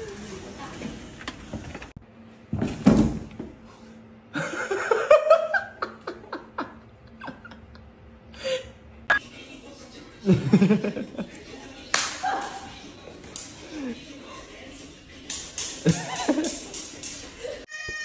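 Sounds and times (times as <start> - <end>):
person laughing in bursts: 4.3 - 7.9.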